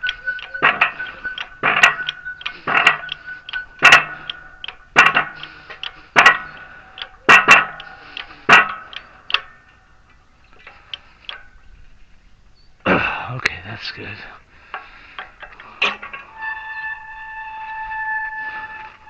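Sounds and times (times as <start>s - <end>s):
hammer striking metal: 0.0s - 9.6s.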